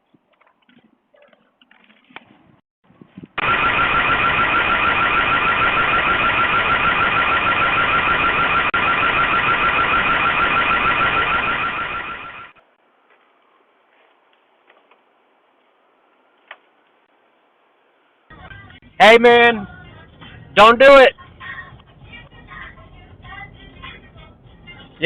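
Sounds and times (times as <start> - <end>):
alarm siren pulsing: 3.4 - 12.6.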